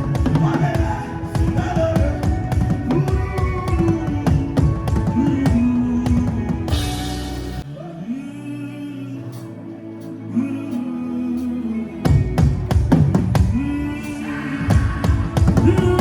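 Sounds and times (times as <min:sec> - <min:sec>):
drum kit playing: 0:00.0 - 0:07.6, 0:14.7 - 0:16.0
gospel singing: 0:00.0 - 0:16.0.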